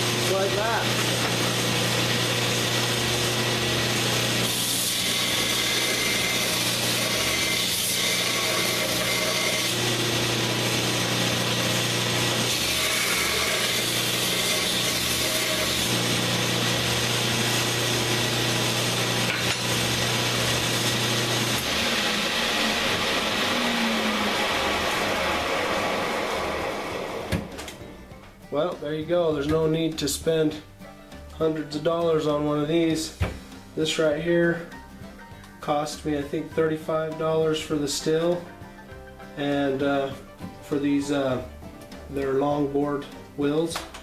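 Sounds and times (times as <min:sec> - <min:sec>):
belt grinder running: 0:00.0 - 0:27.5.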